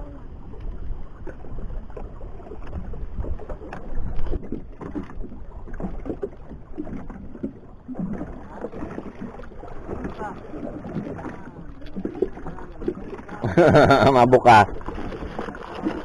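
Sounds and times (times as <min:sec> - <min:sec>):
boat motor rumbling: 0:13.4 - 0:14.7.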